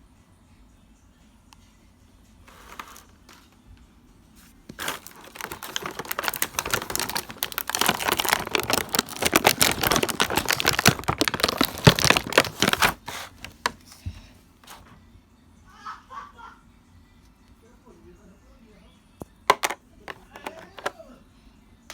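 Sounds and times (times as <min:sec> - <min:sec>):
plastic packaging crinkling: 0:04.6 - 0:14.0, 0:19.5 - 0:20.9.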